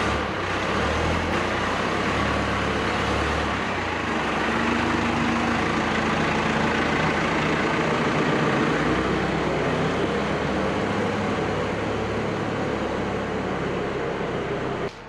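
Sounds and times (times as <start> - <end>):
skid steer engine running: 0.0 - 15.0.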